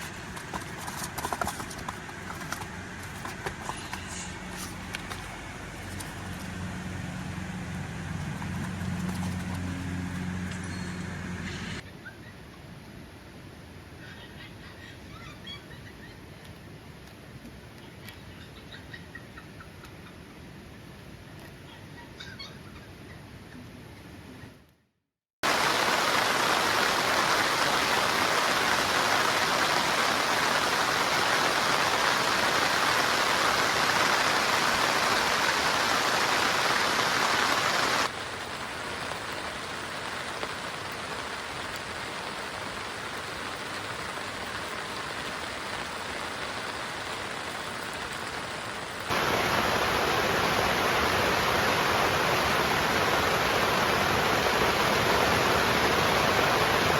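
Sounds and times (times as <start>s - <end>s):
heavy rain pouring: 25.4s - 56.9s.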